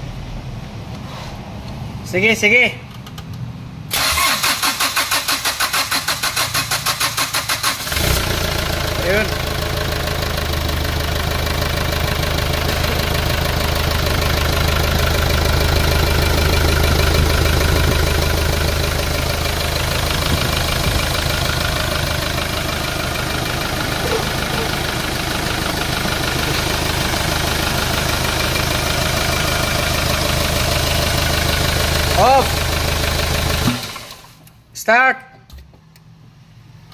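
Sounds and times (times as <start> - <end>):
diesel engine idling: 5.4 - 34.4.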